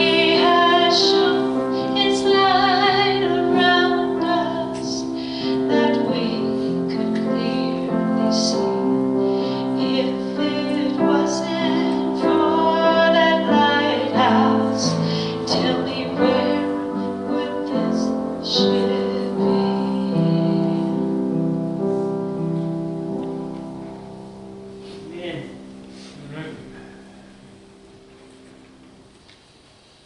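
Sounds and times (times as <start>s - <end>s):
woman singing a slow song: 0.0s - 21.4s
piano accompaniment: 0.0s - 30.0s.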